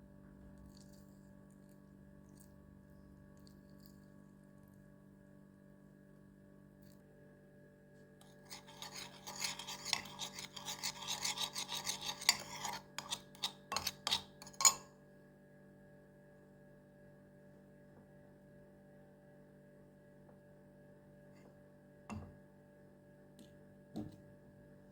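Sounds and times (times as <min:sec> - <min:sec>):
rasping scrapes: 0:08.2 - 0:14.8.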